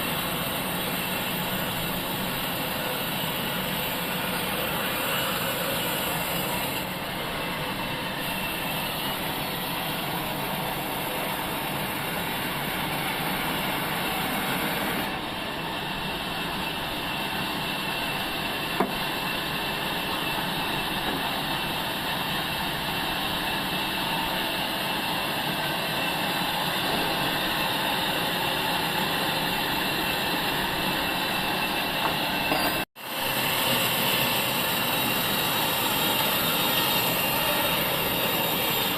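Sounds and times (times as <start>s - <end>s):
saw cutting through log: 0.0s - 15.2s, 32.4s - 38.9s.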